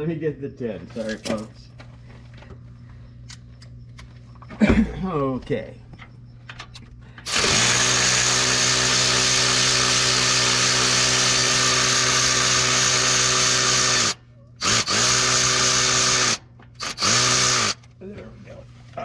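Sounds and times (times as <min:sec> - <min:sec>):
electric power driver spinning: 0:07.2 - 0:17.9.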